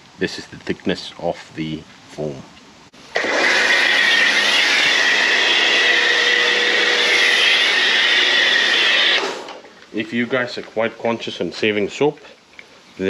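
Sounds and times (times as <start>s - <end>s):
pressure washer hiss and whine: 3.0s - 9.7s.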